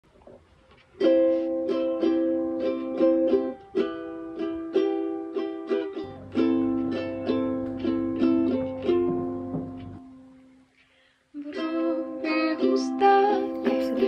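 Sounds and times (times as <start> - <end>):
strummed acoustic string chords: 1.0 - 10.4.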